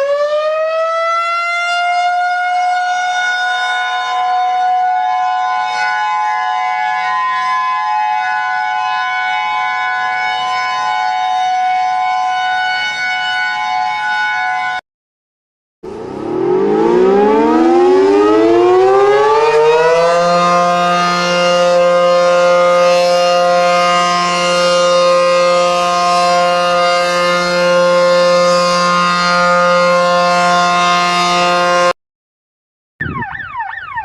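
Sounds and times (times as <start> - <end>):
warning siren wailing: 0.0 - 14.8, 15.8 - 32.0, 33.0 - 34.0
steady alarm chord: 15.9 - 31.9.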